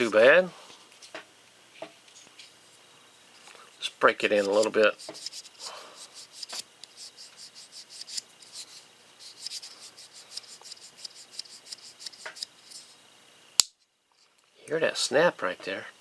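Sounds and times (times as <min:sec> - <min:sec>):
blade scraping in handle: 0:04.2 - 0:13.0.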